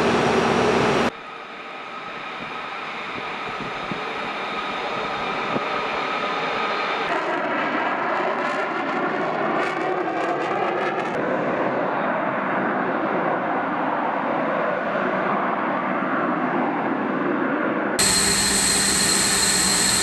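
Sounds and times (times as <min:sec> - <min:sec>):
crackle: 0:18.0 - 0:20.0
faint shifting whine: 0:18.0 - 0:20.0
jet engine rushing: 0:18.0 - 0:20.0.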